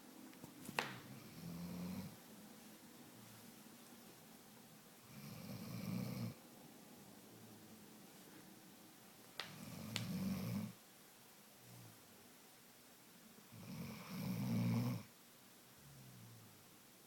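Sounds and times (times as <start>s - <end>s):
pet snoring: 1.1s - 2.2s, 5.0s - 6.4s, 9.5s - 10.8s, 13.5s - 15.1s.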